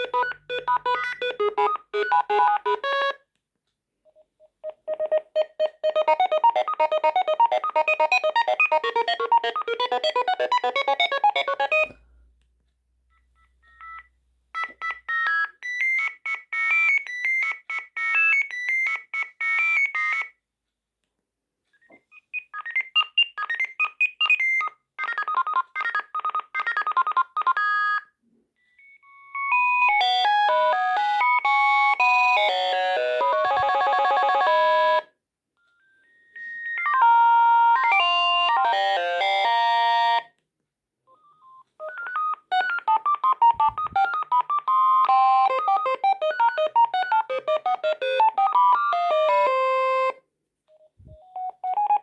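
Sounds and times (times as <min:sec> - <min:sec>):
mobile phone ringtone melodies: 0:00.0 - 0:03.2, 0:04.7 - 0:12.0, 0:29.0 - 0:35.1, 0:35.8 - 0:40.3, 0:41.1 - 0:50.2.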